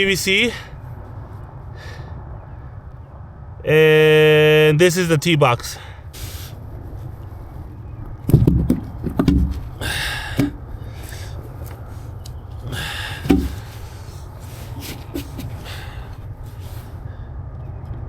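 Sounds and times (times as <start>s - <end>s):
scraping rustles: 6.2s - 9.8s, 10.4s - 17.0s
knocks and thumps: 8.2s - 11.2s, 12.7s - 14.0s, 14.7s - 15.9s.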